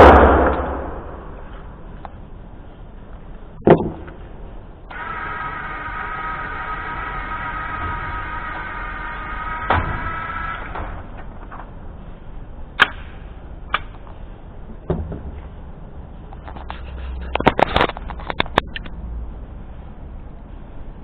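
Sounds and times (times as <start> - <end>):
steady low rumble: 0.0 - 21.0
sharp clicks and knocks: 16.3 - 19.0.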